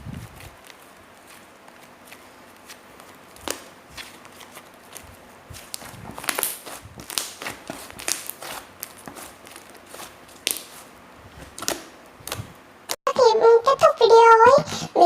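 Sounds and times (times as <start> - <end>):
slime squishing and popping: 2.1 - 5.0, 5.6 - 10.8, 11.4 - 12.5.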